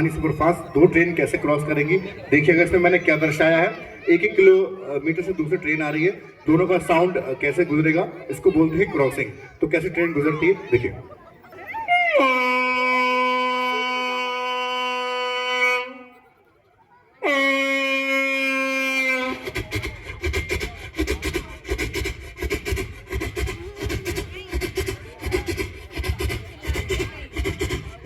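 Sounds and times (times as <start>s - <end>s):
man imitating train horn: 11.9s - 16.2s, 17.2s - 20.2s
man imitating wheel clatter: 19.4s - 28.0s.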